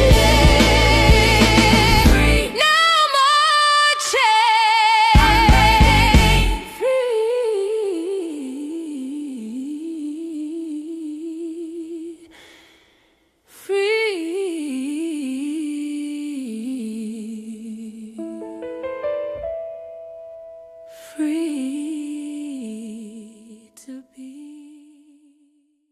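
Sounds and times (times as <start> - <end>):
piano notes: 18.2 - 23.0.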